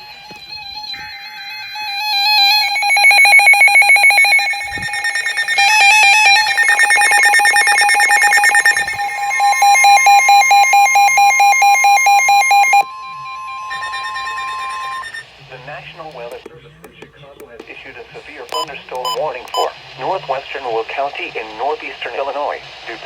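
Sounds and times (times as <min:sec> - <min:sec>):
steady warning tone: 0:00.9 - 0:16.5
radios beeping in fast pulses: 0:01.5 - 0:15.2, 0:18.5 - 0:19.7
burst of data tones: 0:01.9 - 0:15.2.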